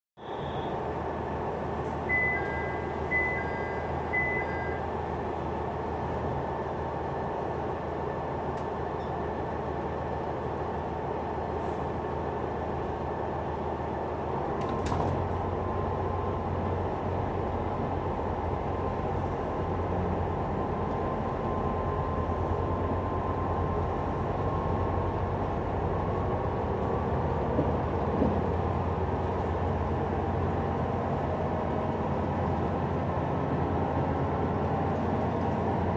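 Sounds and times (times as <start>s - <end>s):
short two-tone beeps: 0.2s - 0.8s, 2.1s - 4.9s
diesel engine drone: 0.2s - 35.9s
wheels rumbling on rail: 0.2s - 35.9s.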